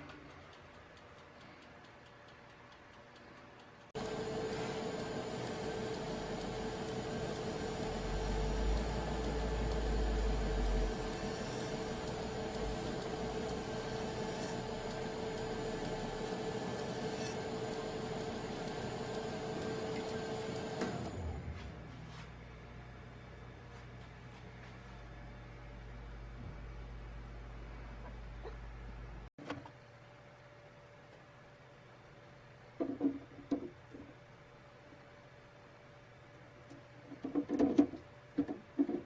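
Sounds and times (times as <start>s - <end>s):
workshop machine whirring: 4.0s - 26.5s.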